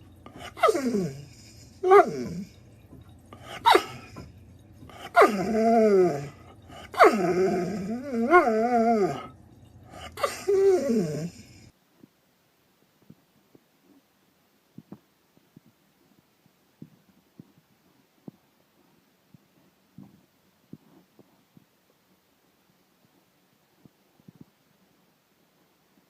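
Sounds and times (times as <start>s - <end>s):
dog howling and whining: 0.2s - 2.6s, 3.4s - 9.4s, 10.0s - 11.7s.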